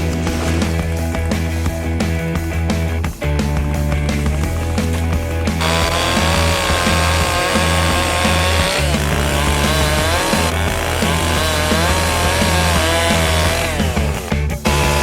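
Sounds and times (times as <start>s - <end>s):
chainsaw cutting: 4.1s - 15.0s.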